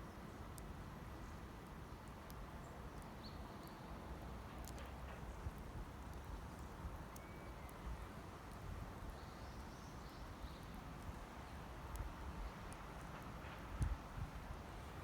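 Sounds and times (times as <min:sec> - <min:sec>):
campfire crackling and popping: 0:04.1 - 0:14.9
faint bird chirps: 0:07.1 - 0:08.1.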